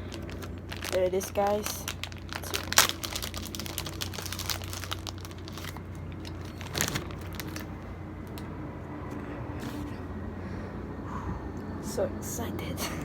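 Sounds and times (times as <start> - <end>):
plastic packaging crinkling: 0.0 - 7.8.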